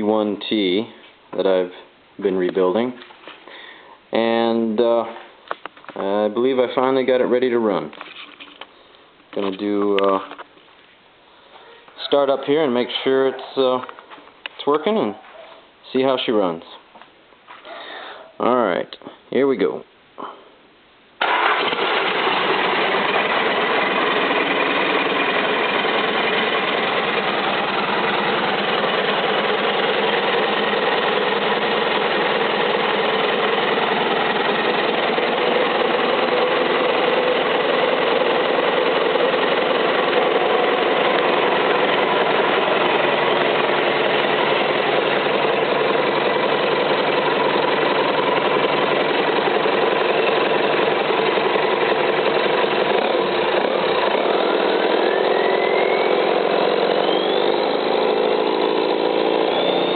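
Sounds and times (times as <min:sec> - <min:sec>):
diesel engine idling: 0:21.2 - 0:59.9.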